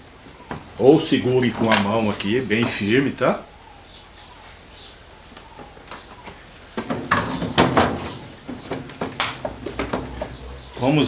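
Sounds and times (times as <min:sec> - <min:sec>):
knocks and clatter of cover: 0:05.9 - 0:10.6.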